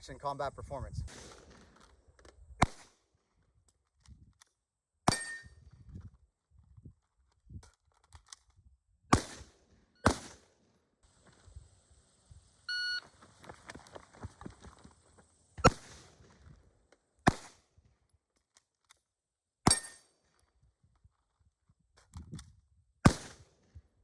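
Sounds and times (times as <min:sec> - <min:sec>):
gunshots: 0:01.1 - 0:01.8, 0:02.6 - 0:02.9, 0:09.1 - 0:10.5, 0:15.6 - 0:16.3, 0:17.2 - 0:17.6, 0:23.1 - 0:23.5
metallic ring from steel target: 0:05.1 - 0:05.6, 0:19.7 - 0:20.1
short electronic beep: 0:12.7 - 0:13.0.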